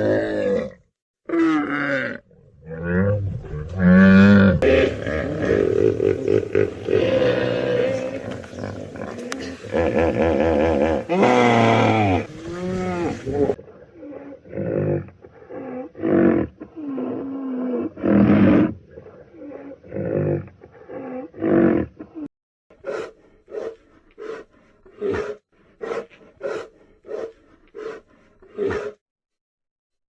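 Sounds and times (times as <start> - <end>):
lion roaring and growling: 0.0 - 22.0
dog barking: 22.8 - 24.5.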